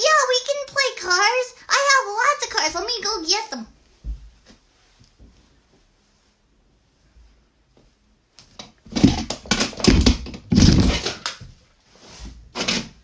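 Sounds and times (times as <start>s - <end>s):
toys clattering and knocking: 8.6s - 11.5s.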